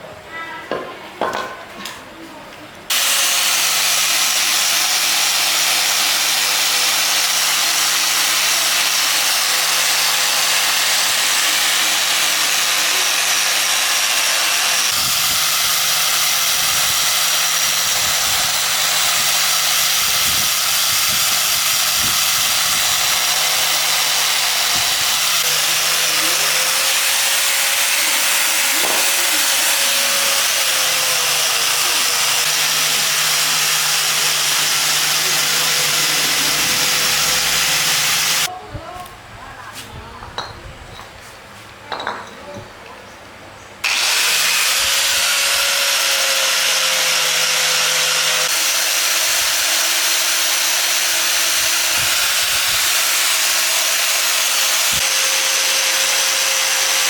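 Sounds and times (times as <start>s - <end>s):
power tool motor hum: 2.9s - 38.5s, 43.8s - 57.0s.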